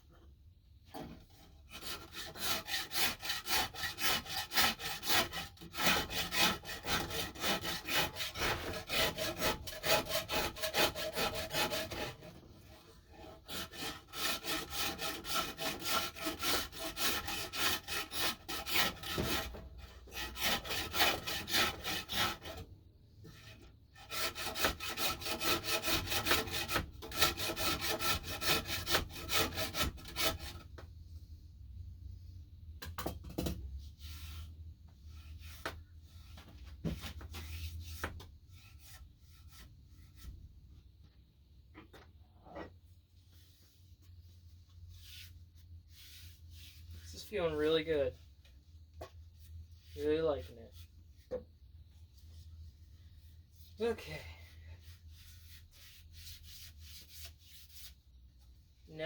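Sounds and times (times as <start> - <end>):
rasp scraping wood: 0.9 - 22.7, 23.4 - 30.7.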